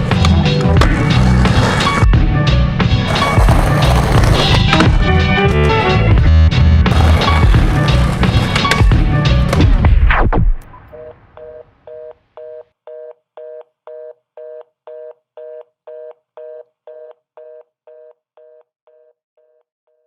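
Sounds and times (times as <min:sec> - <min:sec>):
telephone busy signal beeps: 0:10.8 - 0:18.1.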